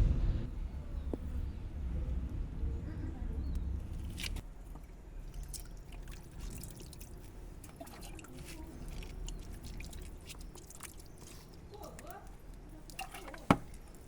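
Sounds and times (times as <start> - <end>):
water dripping and trickling: 3.5 - 14.0.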